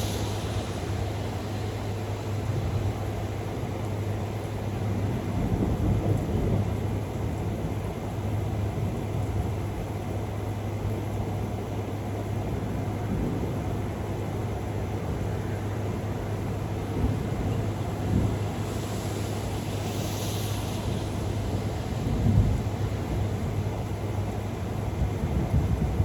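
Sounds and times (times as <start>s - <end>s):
steady low hum: 0.0s - 3.6s, 16.7s - 25.2s
rolling thunder rumble: 0.0s - 26.0s.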